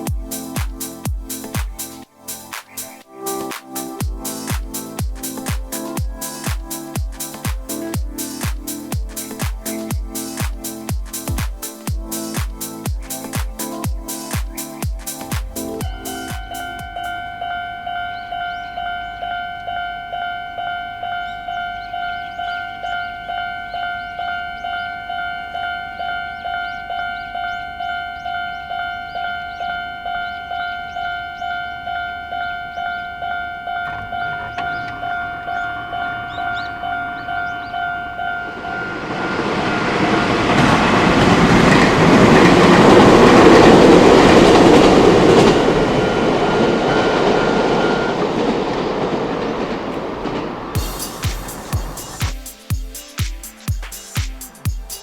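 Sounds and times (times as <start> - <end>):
train passing: 0.0 - 52.7
level crossing bell ringing: 15.8 - 20.8.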